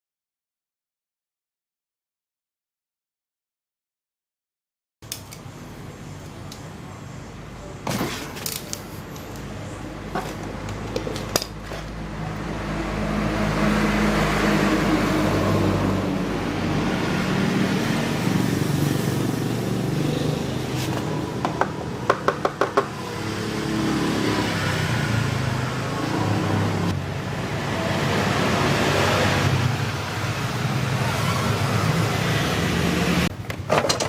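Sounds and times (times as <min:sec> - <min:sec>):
scooter engine revving: 0:12.5 - 0:33.3.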